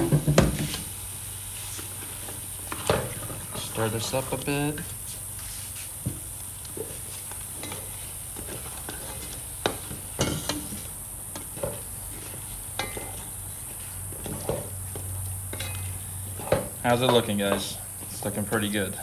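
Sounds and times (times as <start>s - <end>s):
faint frying sizzle: 0.0s - 19.0s
spoon stirring in a pot: 6.7s - 19.0s
spoon knocking and scraping pot: 7.6s - 13.4s, 14.2s - 18.8s.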